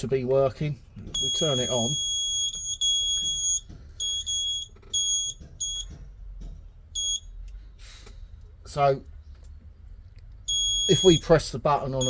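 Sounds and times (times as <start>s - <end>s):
high-pitched electronic beeps: 10.5s - 11.2s.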